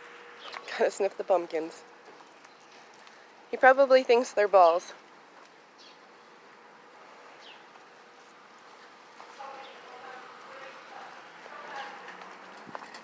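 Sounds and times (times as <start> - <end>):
faint background noise: 0.0 - 13.0.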